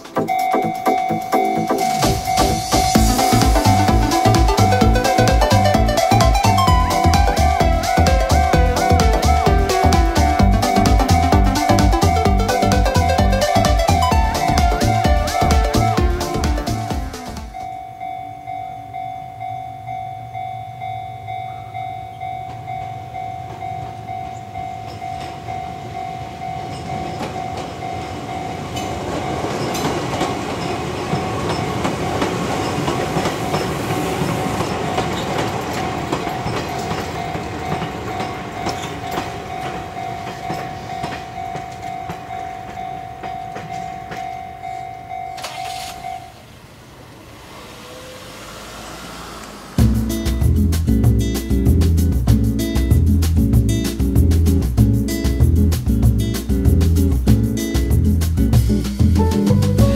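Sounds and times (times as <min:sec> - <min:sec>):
pulsing ringing tone: 0:00.0 - 0:29.7
train passing: 0:00.0 - 0:59.9.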